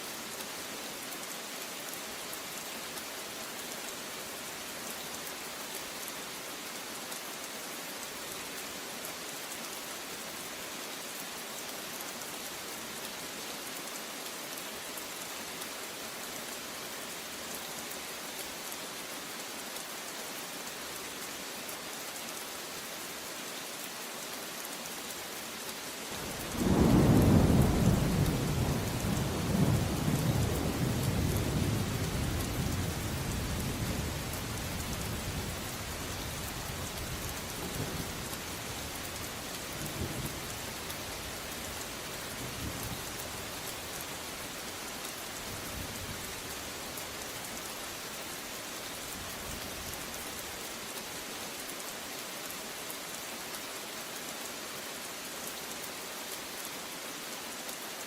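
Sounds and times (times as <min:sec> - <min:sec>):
heavy rain hissing: 0:25.7 - 0:53.5.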